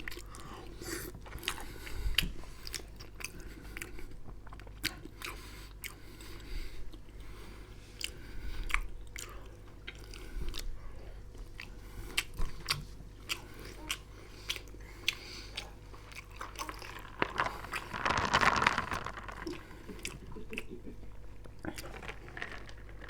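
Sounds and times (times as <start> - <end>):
person chewing food: 0.0 - 23.0
crunching: 16.1 - 20.6.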